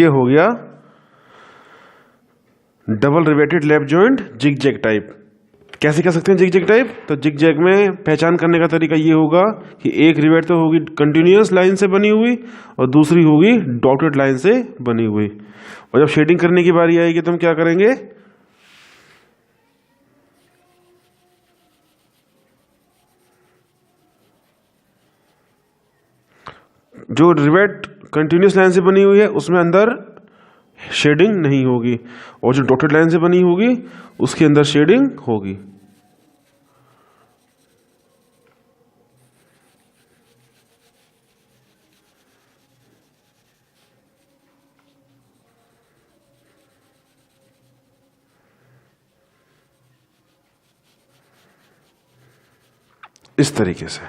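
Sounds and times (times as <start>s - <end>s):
pencil scratching on paper: 19.8s - 27.0s, 33.0s - 53.6s.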